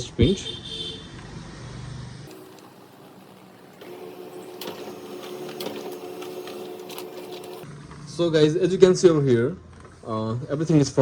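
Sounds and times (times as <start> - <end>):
paper feed clicks: 2.3 - 7.7
printer motors whirring: 2.3 - 7.7.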